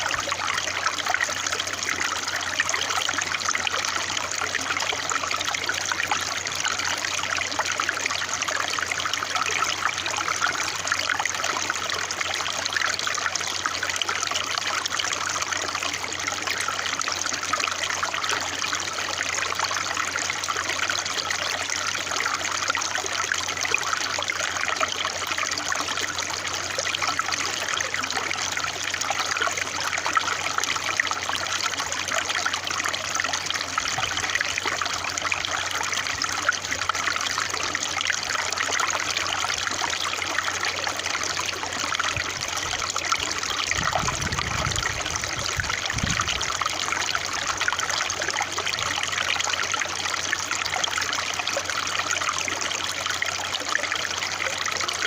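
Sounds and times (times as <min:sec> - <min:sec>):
water trickling and splashing: 0:00.0 - 0:55.0.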